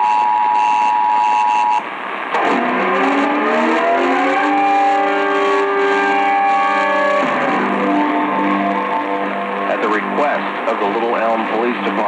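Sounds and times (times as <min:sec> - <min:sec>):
two-tone alert signal over radio: 0:00.0 - 0:01.8
siren rising to steady tone: 0:00.0 - 0:11.1.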